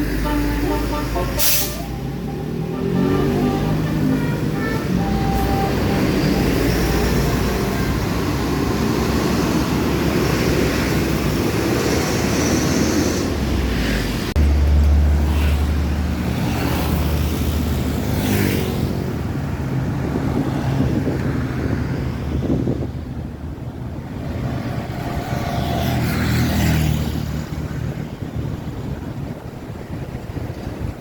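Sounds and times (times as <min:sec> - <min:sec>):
deep engine rumble: 0:00.0 - 0:11.7
passing traffic rumble: 0:00.0 - 0:31.0.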